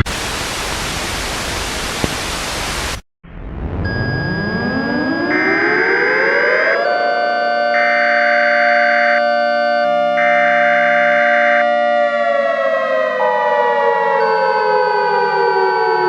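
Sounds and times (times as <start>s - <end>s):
higher siren tone: 3.3s - 16.0s
civil defense siren wailing: 3.6s - 16.0s.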